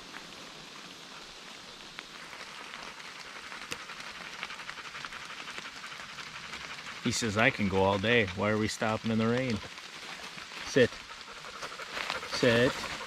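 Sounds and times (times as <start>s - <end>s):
heavy rain: 6.2s - 13.0s.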